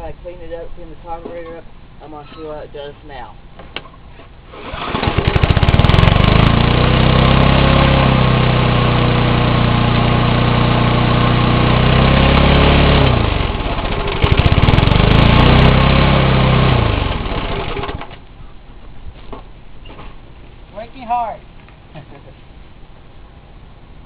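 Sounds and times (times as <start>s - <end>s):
lawn mower engine running: 4.5s - 18.2s.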